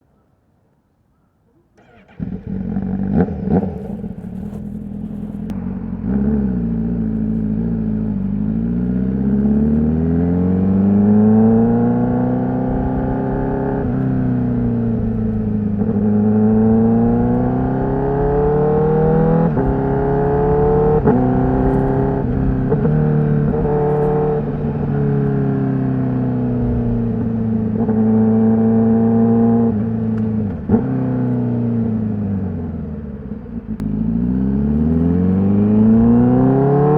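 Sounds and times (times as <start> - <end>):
gear changes: 1.6 - 9.9
motorcycle engine revving: 1.8 - 36.9.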